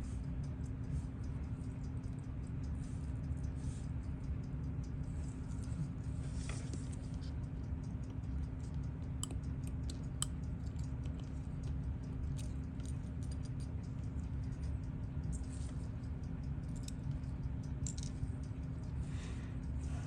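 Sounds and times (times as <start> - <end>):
steady low hum: 0.0 - 20.0
tweezers clicking on metal parts: 7.6 - 19.0.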